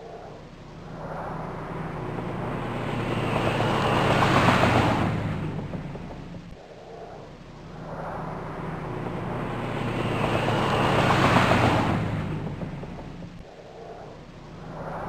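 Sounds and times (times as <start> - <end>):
car passing by: 0.8 - 6.5, 7.7 - 13.4.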